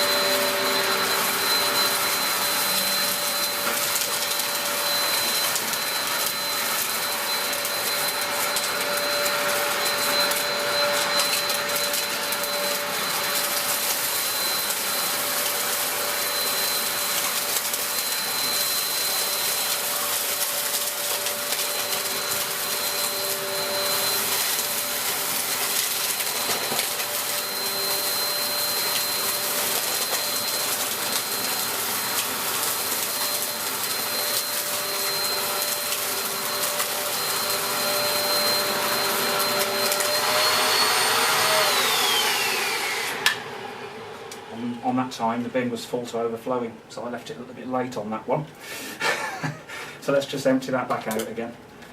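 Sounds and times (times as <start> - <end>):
vacuum cleaner running: 0.0 - 47.1, 48.5 - 50.4.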